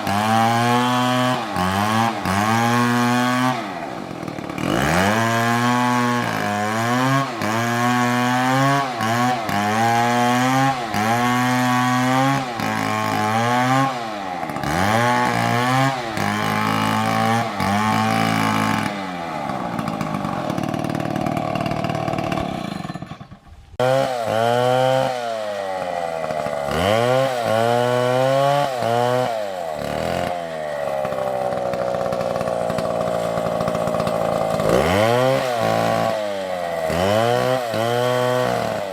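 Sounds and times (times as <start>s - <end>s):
chainsaw cutting into tree: 0.0s - 38.9s.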